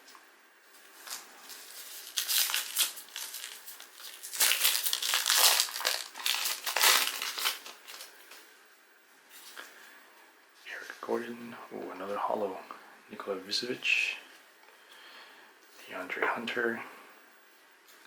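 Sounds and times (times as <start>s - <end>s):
wrapper crinkling: 0.8s - 8.3s.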